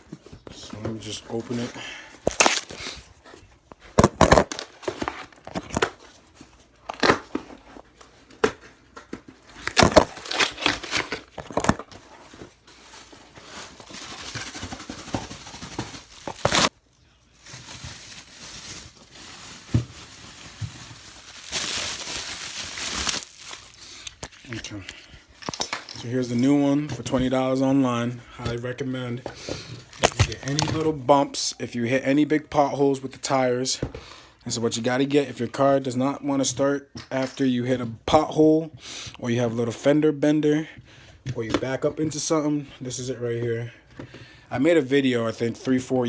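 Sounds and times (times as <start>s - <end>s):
packaging crinkling and tearing: 1.4s - 3.0s, 3.8s - 7.9s, 9.5s - 16.8s, 17.4s - 26.0s, 29.8s - 30.9s.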